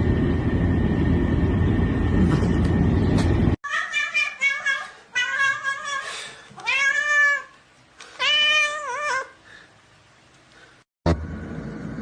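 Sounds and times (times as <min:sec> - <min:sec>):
cat meowing: 0:03.6 - 0:06.0, 0:06.6 - 0:07.6, 0:08.2 - 0:09.4.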